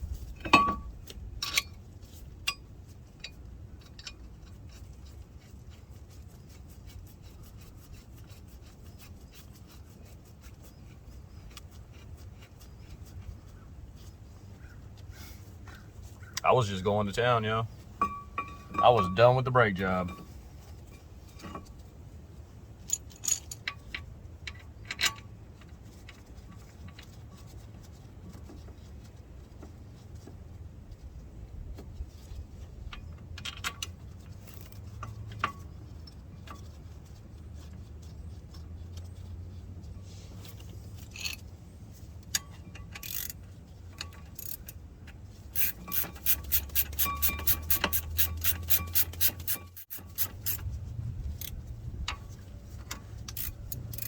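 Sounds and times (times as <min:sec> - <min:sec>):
hand ratchet clicking rapidly: 0:43.0 - 0:43.3, 0:44.4 - 0:44.7, 0:45.5 - 0:50.7, 0:53.3 - 0:54.0
metallic tool clicks and clinks: 0:45.6 - 0:50.6, 0:53.3 - 0:54.0.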